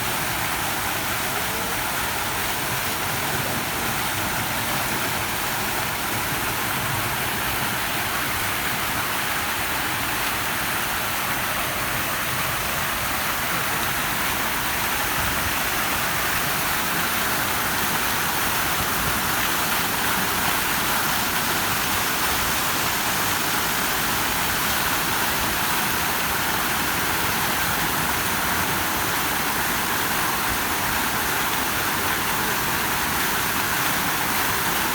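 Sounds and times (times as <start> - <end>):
rushing water: 0.0 - 34.9.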